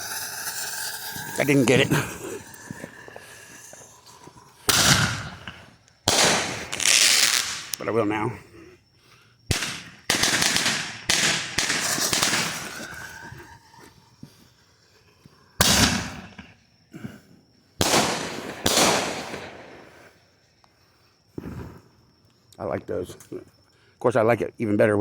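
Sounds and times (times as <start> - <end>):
firework mortar bangs: 0.0 - 7.8, 9.5 - 13.9, 15.6 - 16.6, 17.8 - 20.2
firework crackle: 0.0 - 8.0, 9.5 - 14.3, 15.6 - 16.6, 17.8 - 20.2.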